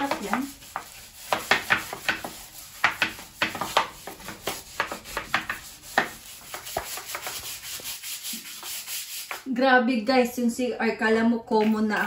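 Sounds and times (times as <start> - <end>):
brush scrubbing a surface: 0.0 - 9.5.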